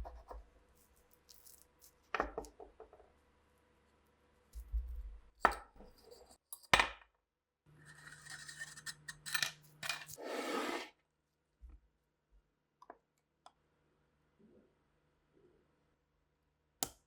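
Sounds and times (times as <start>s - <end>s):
scraping and rubbing strokes: 10.2s - 10.9s.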